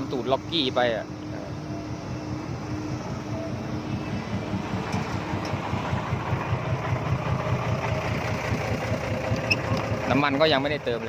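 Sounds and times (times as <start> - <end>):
diesel truck engine idling: 0.0 - 11.0.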